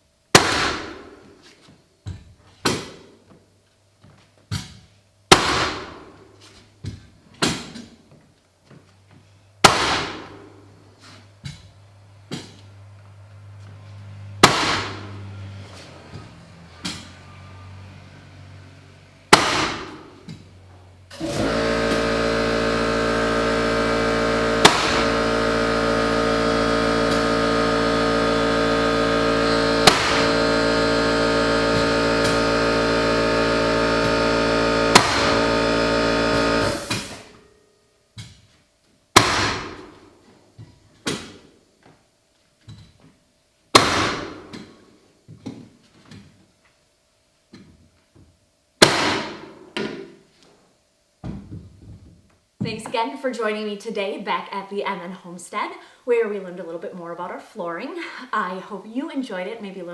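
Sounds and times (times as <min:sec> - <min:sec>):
sharp hammer strikes: 0:14.4 - 0:15.1, 0:19.3 - 0:20.1, 0:24.6 - 0:25.2, 0:29.8 - 0:30.3, 0:34.9 - 0:35.4, 0:39.2 - 0:39.8, 0:43.8 - 0:44.4, 0:48.8 - 0:49.5
machine running steadily: 0:21.1 - 0:37.6.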